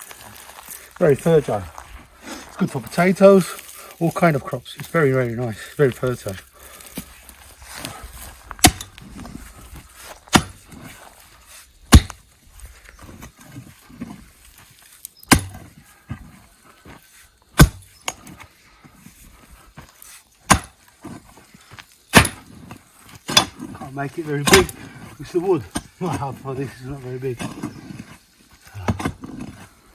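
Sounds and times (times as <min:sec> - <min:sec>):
soil scraping and shifting: 0:00.0 - 0:29.9
digging tool striking hard soil: 0:07.8 - 0:09.4, 0:10.0 - 0:10.9, 0:11.9 - 0:12.3, 0:15.2 - 0:15.7, 0:17.5 - 0:18.2, 0:20.4 - 0:20.8, 0:22.1 - 0:22.6, 0:23.3 - 0:25.0, 0:28.8 - 0:29.3.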